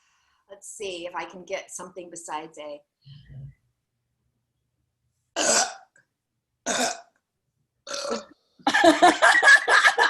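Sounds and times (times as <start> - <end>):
woman burping: 5.4 - 5.9, 6.6 - 7.1, 7.9 - 8.4.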